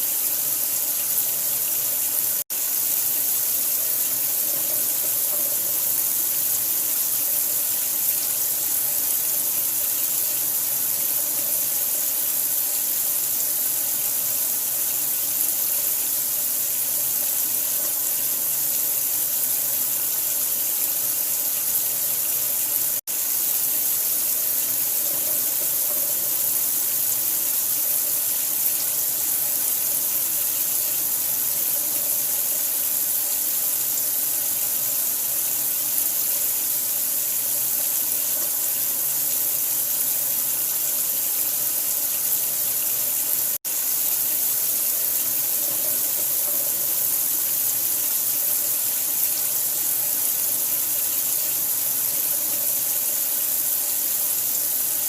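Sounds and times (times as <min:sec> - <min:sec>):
running water hiss: 0:00.0 - 0:55.0.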